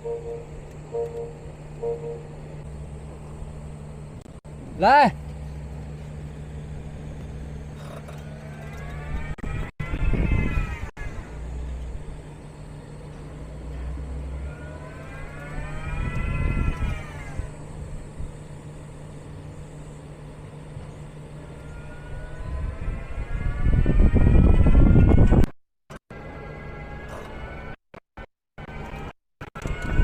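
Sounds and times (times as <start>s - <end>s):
heavy rumble: 0.0s - 25.5s
electric motor whining: 5.2s - 25.5s
brake creak: 7.1s - 10.9s, 13.6s - 17.7s, 27.0s - 27.6s.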